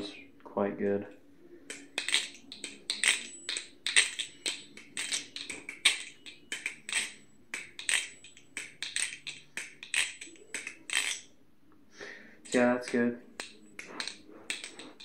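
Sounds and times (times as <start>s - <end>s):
balisong clicks and clacks: 12.5s - 15.0s.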